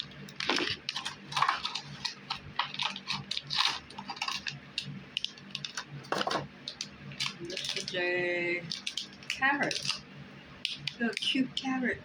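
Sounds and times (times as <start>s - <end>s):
packaging rustling: 0.0s - 8.0s, 8.6s - 10.0s.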